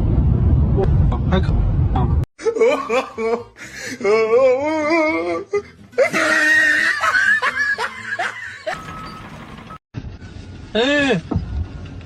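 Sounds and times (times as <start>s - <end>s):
person laughing: 2.4s - 5.1s, 6.0s - 8.8s.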